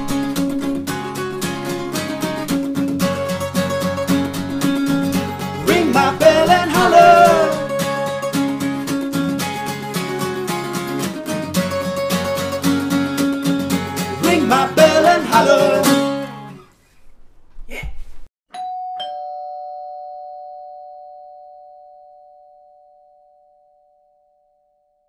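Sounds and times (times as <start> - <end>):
acoustic guitar strum: 0.0 - 16.7
person singing: 3.1 - 8.6, 13.7 - 16.4
doorbell ding-dong chime: 18.5 - 24.3.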